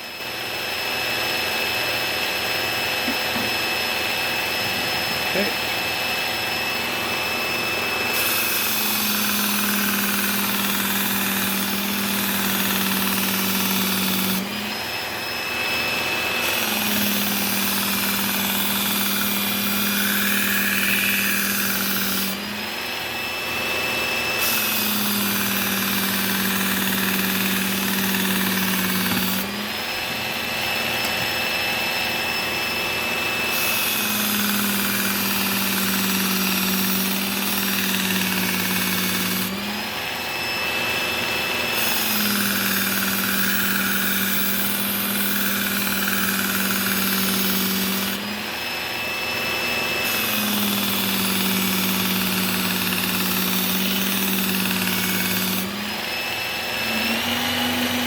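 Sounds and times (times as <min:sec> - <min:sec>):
electric belt sharpener whining: 0:00.0 - 0:58.0.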